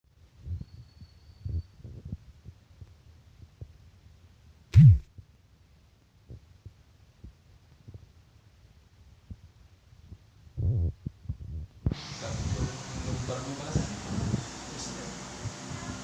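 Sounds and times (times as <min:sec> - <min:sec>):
loud sharp thud: 0:04.8 - 0:05.1
soft low thumps: 0:04.8 - 0:05.3, 0:09.2 - 0:12.0.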